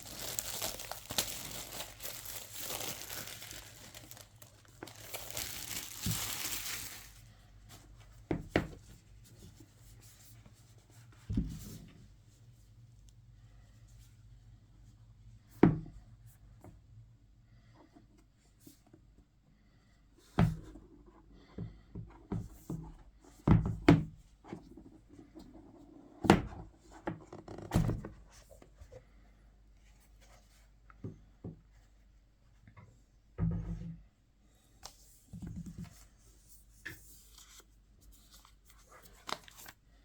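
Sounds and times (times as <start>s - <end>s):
knocks and thunks of handling: 11.2s - 11.9s, 33.4s - 34.0s.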